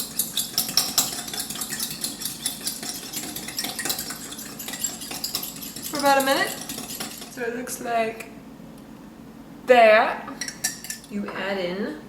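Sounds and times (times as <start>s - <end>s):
fork clicking in mug whisking egg: 0.0s - 7.4s.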